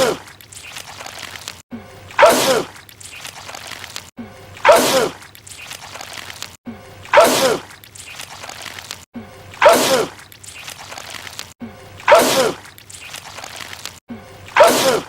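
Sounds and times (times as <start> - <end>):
man sneezing: 12.1 - 12.6, 14.6 - 15.0.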